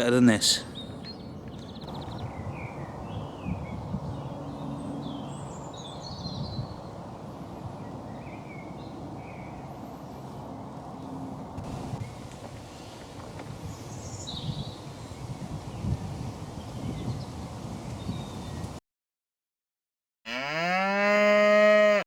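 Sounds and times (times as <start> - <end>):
small birds chirping and singing: 0.0 - 10.5, 11.6 - 18.8.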